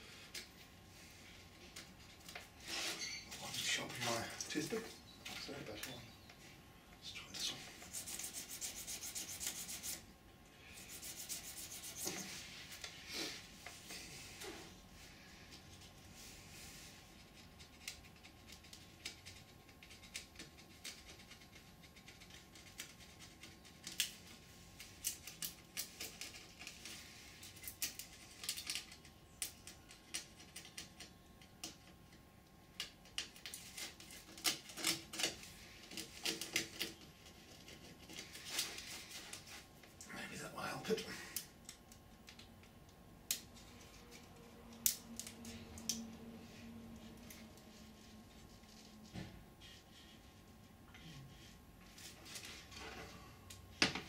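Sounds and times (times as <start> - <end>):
toothpick clicking and scratching: 17.3 - 31.9.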